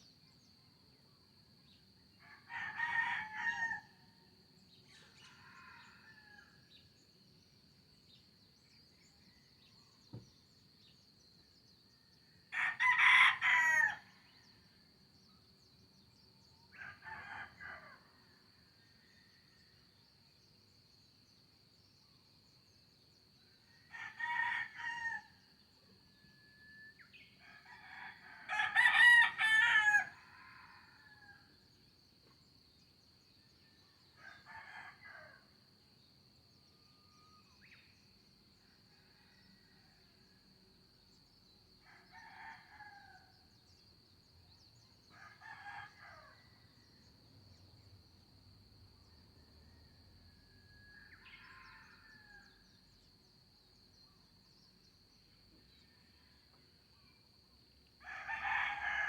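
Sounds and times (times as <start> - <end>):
roosters crowing: 12.5 - 14.0, 27.7 - 31.4.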